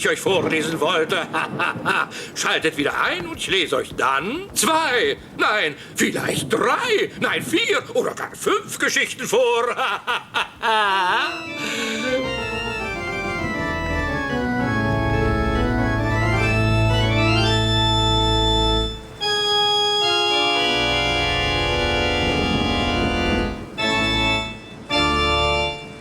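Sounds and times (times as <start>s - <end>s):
organ music: 11.1s - 26.0s.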